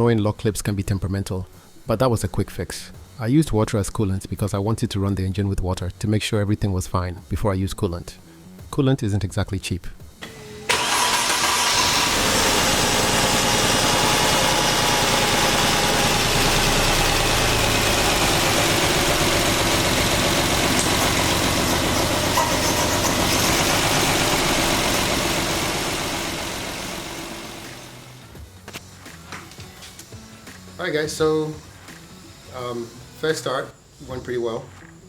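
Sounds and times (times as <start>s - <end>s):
car engine idling: 10.7s - 28.2s.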